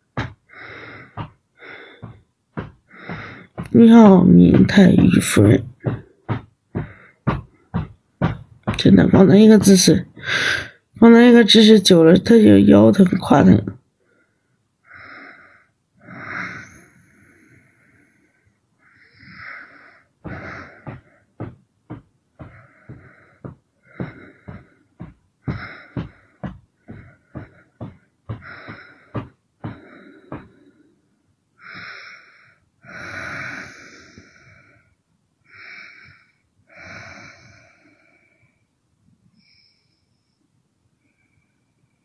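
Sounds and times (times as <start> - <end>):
woman breathing wheezily: 0.2 - 3.7, 10.2 - 10.9, 14.1 - 38.7, 39.4 - 41.8.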